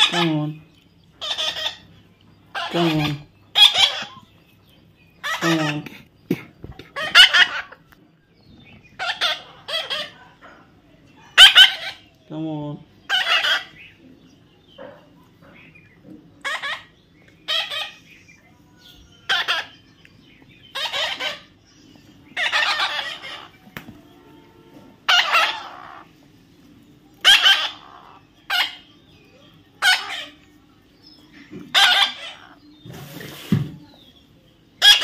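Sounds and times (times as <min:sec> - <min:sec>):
parrot squawking: 0:00.0 - 0:00.6, 0:01.2 - 0:04.3, 0:05.2 - 0:06.0, 0:06.9 - 0:07.9, 0:09.0 - 0:10.5, 0:11.3 - 0:12.1, 0:13.0 - 0:14.0, 0:16.4 - 0:18.1, 0:18.8 - 0:19.9, 0:20.6 - 0:21.6, 0:22.3 - 0:23.6, 0:25.0 - 0:26.2, 0:27.2 - 0:29.0, 0:29.8 - 0:30.6, 0:31.6 - 0:32.7, 0:34.8 - 0:35.0.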